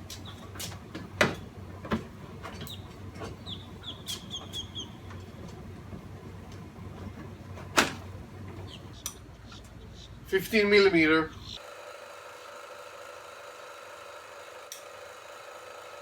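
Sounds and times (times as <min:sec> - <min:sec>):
high bird chirps: 0:02.7 - 0:05.3.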